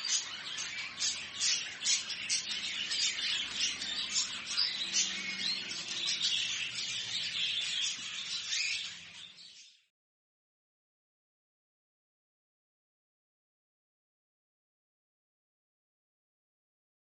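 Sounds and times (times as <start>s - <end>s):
many small birds chirping: 0.0s - 9.9s.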